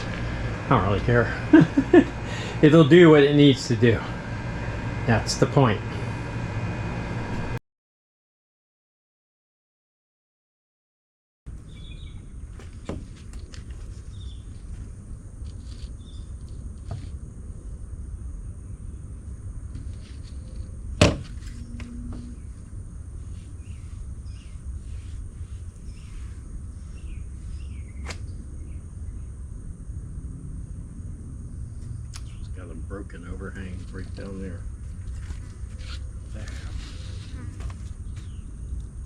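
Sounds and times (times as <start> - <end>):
steady low rumble: 0.0 - 7.6, 11.5 - 39.0
small birds chirping: 11.6 - 12.9, 13.8 - 14.8, 15.6 - 16.5, 23.2 - 29.4, 31.6 - 38.9.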